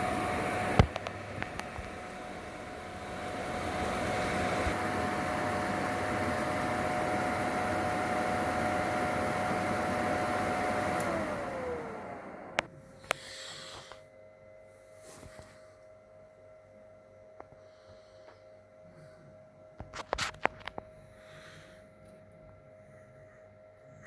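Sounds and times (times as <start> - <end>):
machine fan rushing: 0.0 - 12.7.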